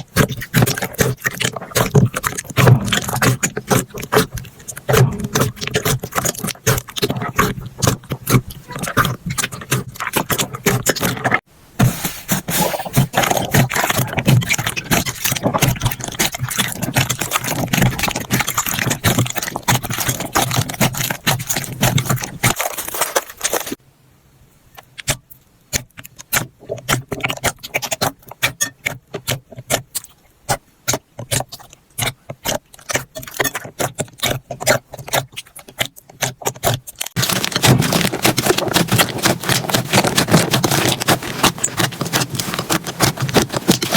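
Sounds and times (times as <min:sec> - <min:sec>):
slime crackling and clicking: 0:00.2 - 0:11.4, 0:30.9 - 0:43.9.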